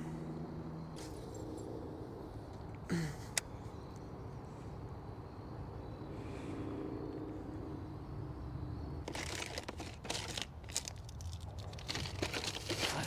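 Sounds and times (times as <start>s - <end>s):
plastic crinkling: 9.1s - 13.0s.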